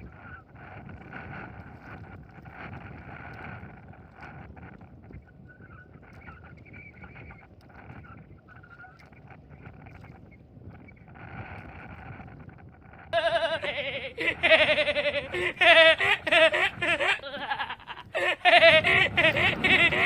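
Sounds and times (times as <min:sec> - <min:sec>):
wind: 0:00.0 - 0:20.0
water noise: 0:13.2 - 0:20.0.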